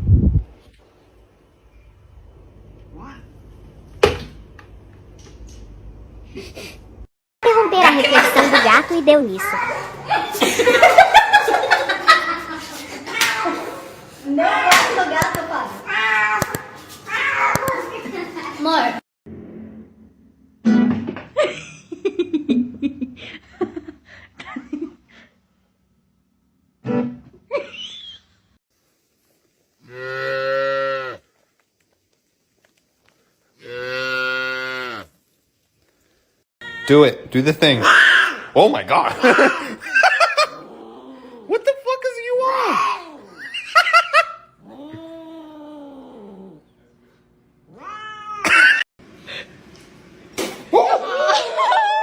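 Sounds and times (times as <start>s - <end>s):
person laughing in bursts: 10.1s - 12.9s, 39.1s - 40.6s
cat meowing: 15.9s - 17.8s, 47.7s - 48.5s.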